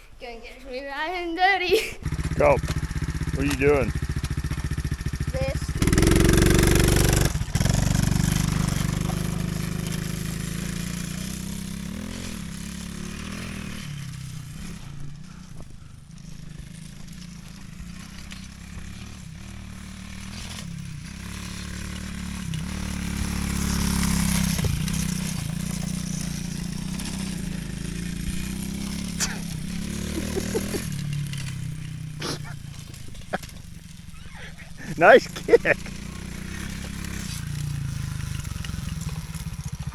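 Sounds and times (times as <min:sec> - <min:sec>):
off-road vehicle engine revving: 0:02.0 - 0:15.4, 0:18.0 - 0:39.9.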